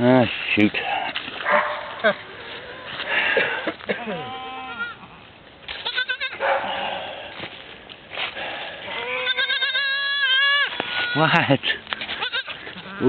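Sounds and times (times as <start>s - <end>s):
goats bleating: 3.8s - 5.1s, 5.7s - 6.4s, 8.9s - 13.0s.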